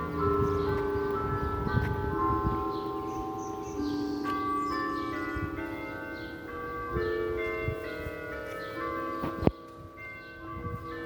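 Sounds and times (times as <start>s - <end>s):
church bells playing a hymn: 0.0s - 11.0s.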